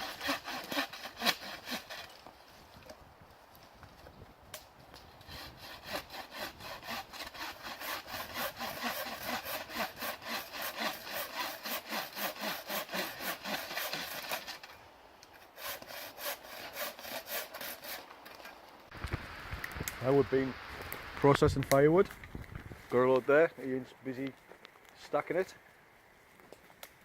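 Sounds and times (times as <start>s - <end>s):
hand saw cutting wood: 0.0s - 2.3s, 5.2s - 14.8s, 15.4s - 18.6s.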